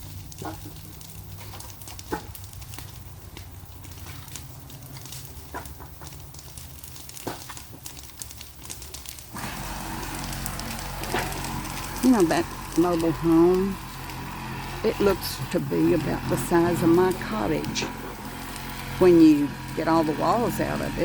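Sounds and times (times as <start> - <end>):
burn pile crackling and popping: 0.0 - 21.0
low steady hum: 9.4 - 21.0.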